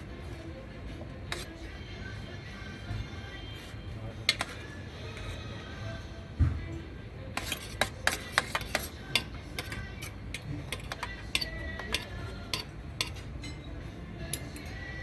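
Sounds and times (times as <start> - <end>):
cutlery clinking on plates: 4.3 - 5.4, 7.4 - 14.9.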